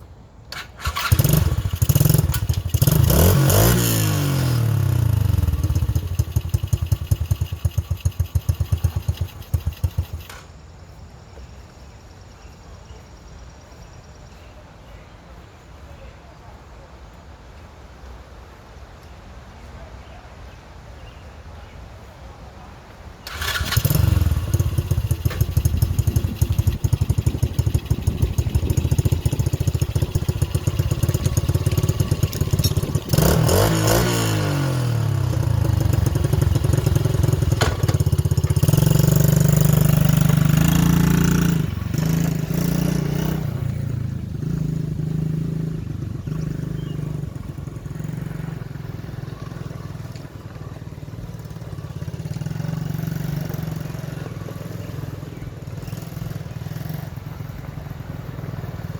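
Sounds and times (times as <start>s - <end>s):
quad bike engine revving: 0.5s - 10.5s, 23.2s - 58.9s.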